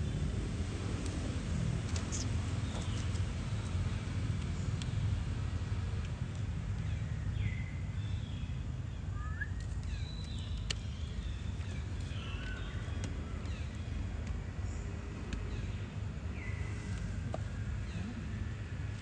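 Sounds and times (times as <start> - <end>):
animals chirping: 2.0 - 3.3
faint clicks: 9.6 - 10.9.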